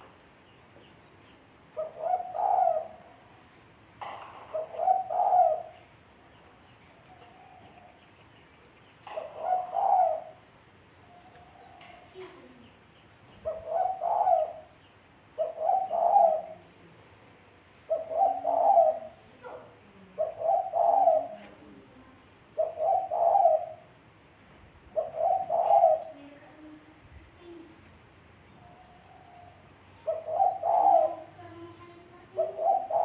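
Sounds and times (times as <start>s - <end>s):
dove cooing: 1.7s - 3.4s, 4.0s - 5.9s, 7.0s - 8.1s, 9.0s - 12.7s, 13.3s - 14.8s, 15.4s - 16.7s, 17.8s - 21.9s, 22.5s - 23.9s, 24.9s - 26.8s, 28.6s - 33.0s.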